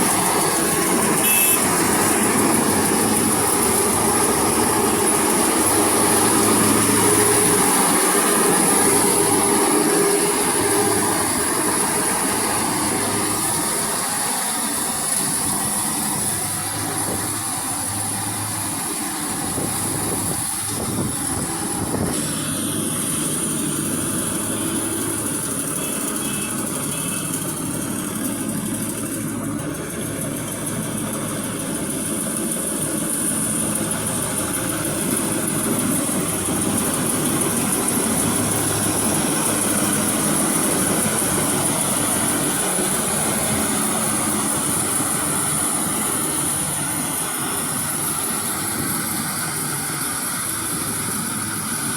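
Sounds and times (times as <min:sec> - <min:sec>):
combine harvester engine hum: 0:00.0 - 0:51.9
high-pitched whine: 0:00.0 - 0:51.9.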